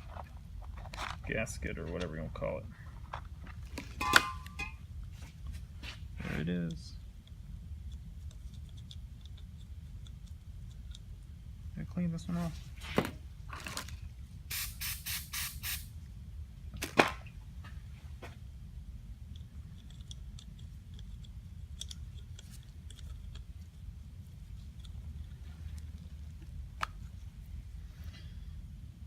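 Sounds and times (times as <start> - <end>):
steady low hum: 0.0 - 29.0
spray hissing: 14.5 - 15.9.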